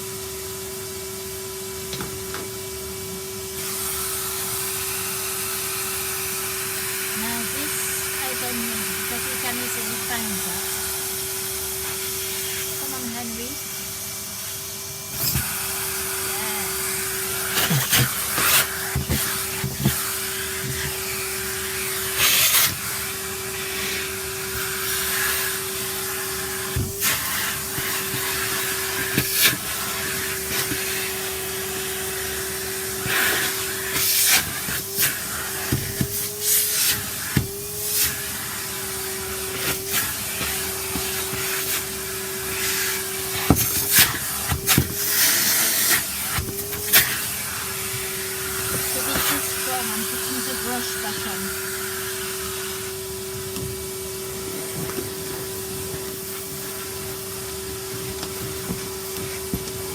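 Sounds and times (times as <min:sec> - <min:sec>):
vacuum cleaner running: 0:00.0 - 0:59.9.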